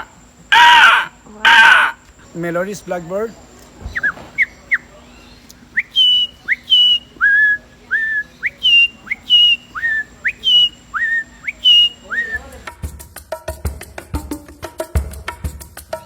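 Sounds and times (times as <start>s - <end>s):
person whistling birdsong: 3.9s - 12.6s.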